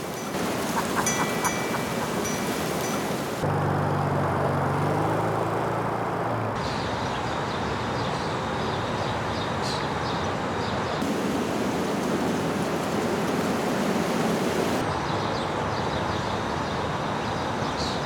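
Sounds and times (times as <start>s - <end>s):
vehicle engine humming: 0.0s - 6.6s, 11.0s - 14.9s
outdoor noise: 0.0s - 18.0s.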